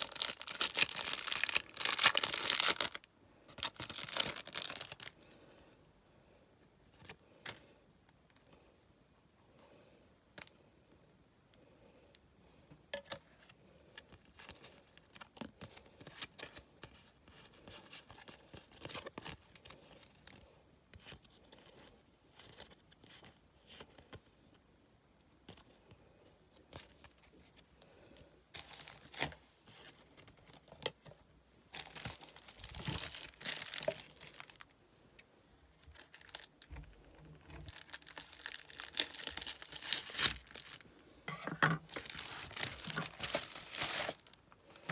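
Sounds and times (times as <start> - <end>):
card packets torn and crinkled: 0.0 - 5.2, 31.7 - 34.7, 35.9 - 36.7, 37.6 - 40.8, 41.9 - 44.9.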